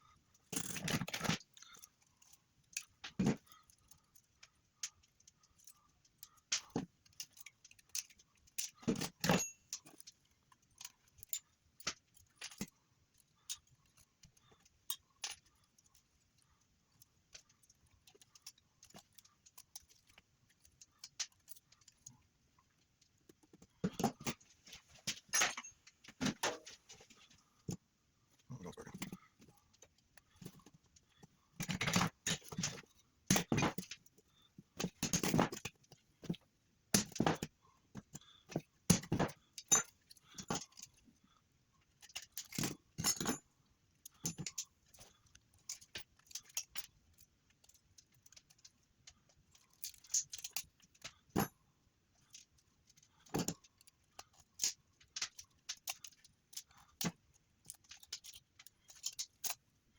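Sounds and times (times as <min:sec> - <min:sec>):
hand tools clinking and knocking: 0:00.5 - 0:04.0, 0:06.5 - 0:10.1, 0:23.3 - 0:27.8, 0:28.4 - 0:34.2, 0:34.8 - 0:36.4, 0:37.0 - 0:41.0, 0:42.0 - 0:43.4, 0:44.1 - 0:45.1, 0:49.6 - 0:51.6, 0:53.2 - 0:59.6.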